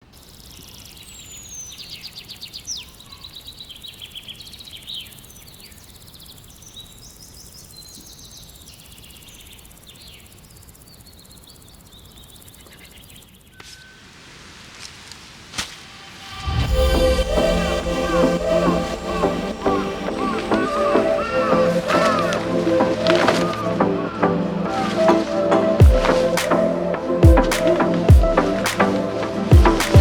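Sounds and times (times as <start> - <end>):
small birds singing and chirping: 0.0 - 13.9, 18.2 - 30.0.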